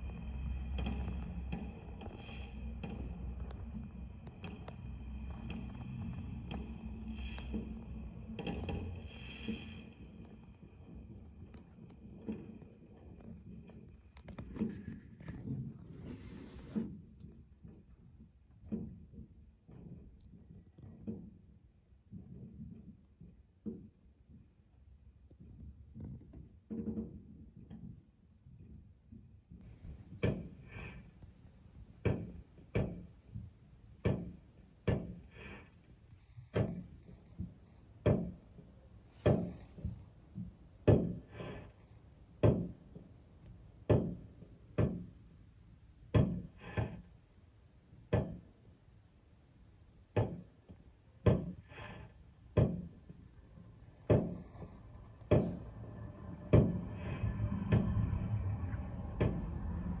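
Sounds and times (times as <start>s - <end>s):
steady noise: 0.0s - 11.4s, 53.3s - 60.0s.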